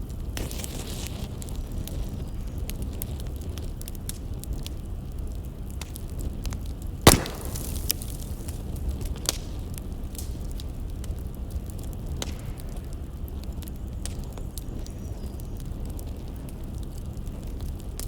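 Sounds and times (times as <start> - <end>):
firewood crackling: 0.0 - 18.0
low fire rumble: 0.0 - 18.0
sharp loud pop: 7.1 - 8.0.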